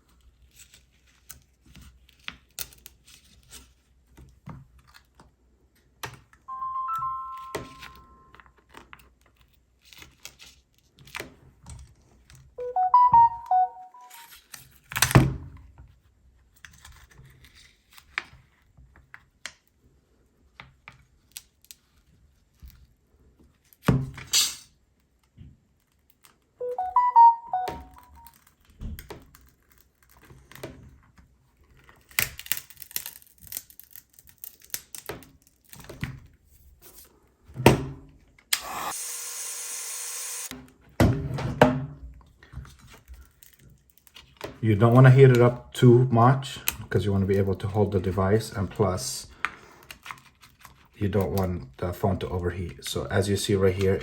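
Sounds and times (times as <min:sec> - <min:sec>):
short electronic chime: 0:06.5 - 0:08.4, 0:12.6 - 0:14.3, 0:26.6 - 0:28.3.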